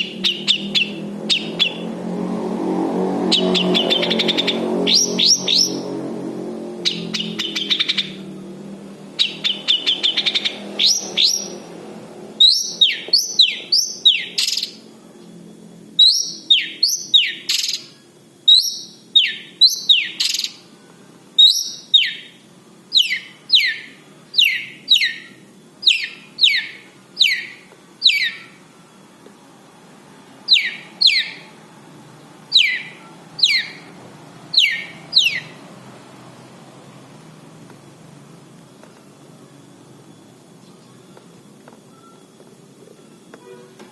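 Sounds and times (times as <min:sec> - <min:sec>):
bird chattering trill: 0:00.0 - 0:02.0, 0:03.3 - 0:06.0, 0:06.7 - 0:08.4, 0:09.1 - 0:11.8, 0:12.4 - 0:14.9, 0:16.0 - 0:20.7, 0:21.4 - 0:28.6, 0:30.4 - 0:31.6, 0:32.5 - 0:35.7
sharp downward-sweeping bird calls: 0:00.0 - 0:14.9, 0:16.0 - 0:20.7, 0:21.4 - 0:28.6, 0:30.4 - 0:31.6, 0:32.4 - 0:35.7.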